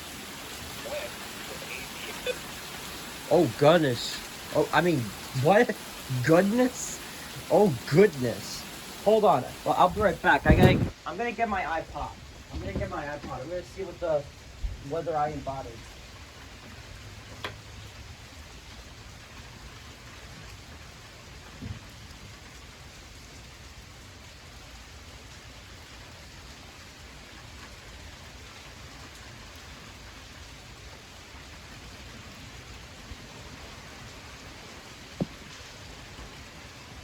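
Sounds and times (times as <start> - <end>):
heavy rain pouring: 0.0 - 37.0
dull thump: 10.4 - 10.9, 35.2 - 35.4.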